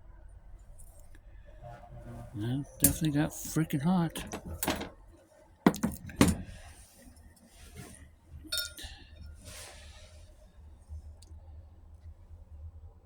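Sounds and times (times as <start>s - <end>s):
low steady hum: 0.0s - 13.0s
ringing metal clink: 2.8s - 3.2s, 8.5s - 9.3s.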